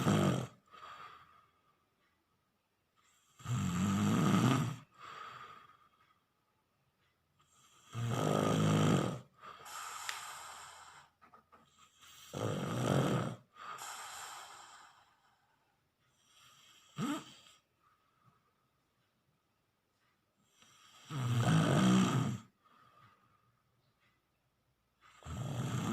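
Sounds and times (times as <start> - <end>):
loud rattling snoring: 0.0 - 0.6, 3.2 - 4.8, 7.5 - 10.9, 11.9 - 14.8, 16.3 - 17.6, 20.7 - 22.5, 25.1 - 25.9
breathy breath: 0.0 - 2.1, 4.8 - 6.4, 9.2 - 12.6, 13.4 - 18.7, 21.8 - 24.2.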